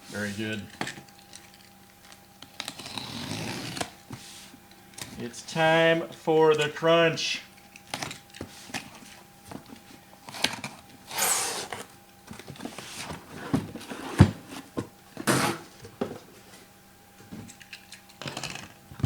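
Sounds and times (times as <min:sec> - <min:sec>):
cardboard tearing swishes: 0:11.1 - 0:11.9.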